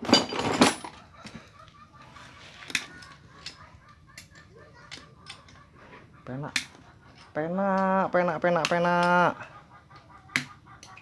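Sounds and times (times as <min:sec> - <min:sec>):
metal tools clanking: 0:00.0 - 0:01.4.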